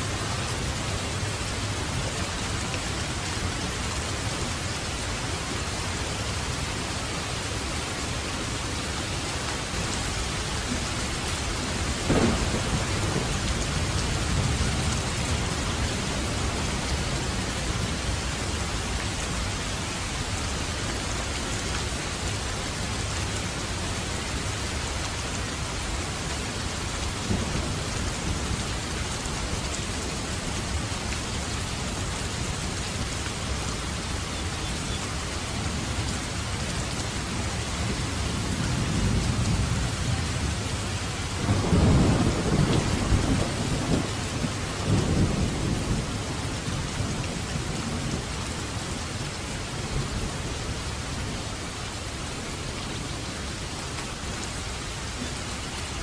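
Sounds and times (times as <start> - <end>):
heavy rain: 0.0 - 56.0
thunderclap rolling rumble: 10.3 - 18.7, 26.9 - 30.9, 35.6 - 48.3.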